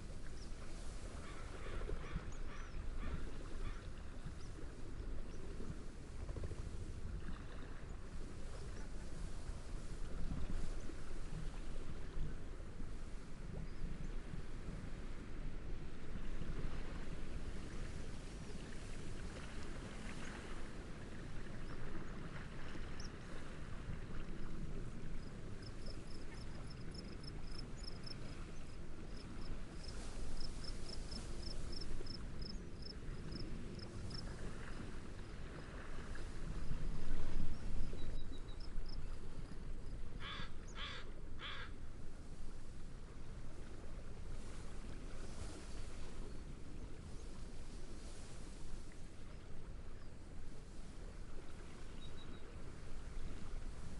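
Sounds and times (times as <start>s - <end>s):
gentle waves: 0.0s - 53.9s
wind: 0.0s - 53.9s.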